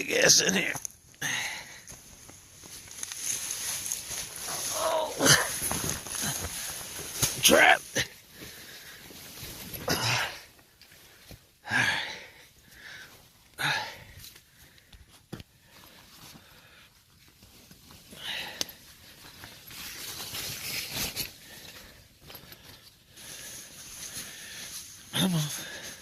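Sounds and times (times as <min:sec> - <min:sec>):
rustling and shuffling: 0:01.8 - 0:09.9, 0:14.1 - 0:26.0
man grunting and breathing hard: 0:04.5 - 0:06.7, 0:09.9 - 0:10.5, 0:11.6 - 0:12.4, 0:13.6 - 0:14.1.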